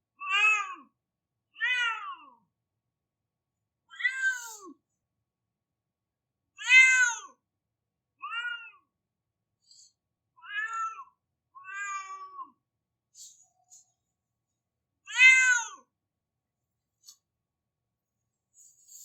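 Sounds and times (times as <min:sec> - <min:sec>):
cat meowing: 0:08.2 - 0:08.8, 0:10.4 - 0:12.5, 0:15.1 - 0:15.8.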